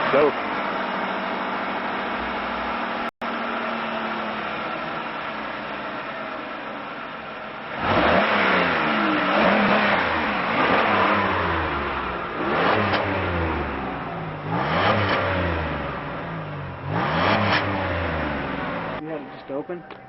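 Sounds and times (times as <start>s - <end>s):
car engine revving: 7.6s - 20.0s.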